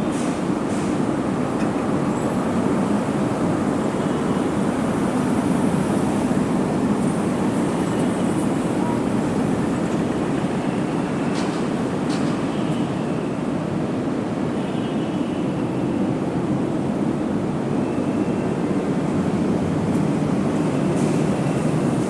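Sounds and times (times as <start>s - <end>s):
vehicles rumbling: 19.0s - 22.0s.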